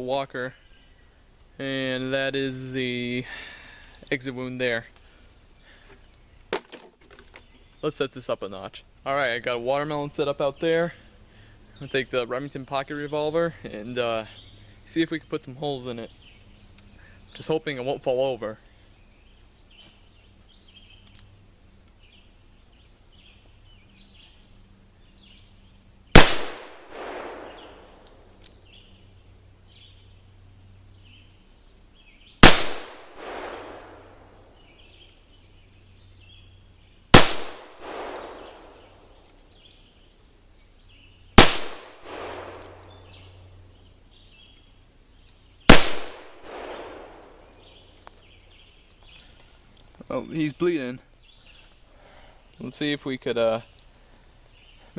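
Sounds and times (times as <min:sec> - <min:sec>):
birds chirping faintly: 0:00.0 - 0:54.9
revolver gunshots: 0:26.2 - 0:28.0, 0:32.4 - 0:34.3, 0:37.1 - 0:38.9, 0:41.4 - 0:43.1, 0:45.7 - 0:47.6.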